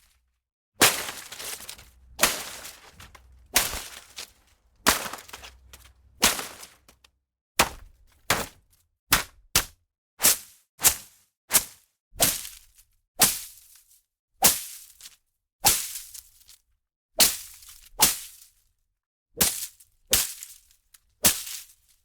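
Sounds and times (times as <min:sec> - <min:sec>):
foliage struck with leafy rustle: 0:00.8 - 0:07.0.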